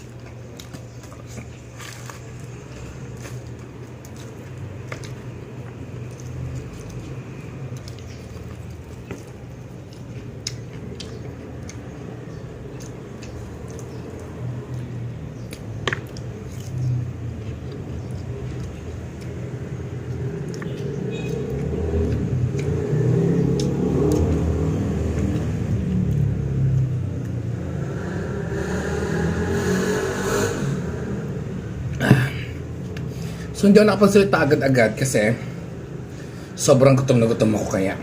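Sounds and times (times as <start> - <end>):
chewing fried chicken: 0.0 - 27.5
low traffic rumble: 0.0 - 38.0
vehicle approaching: 0.0 - 38.0.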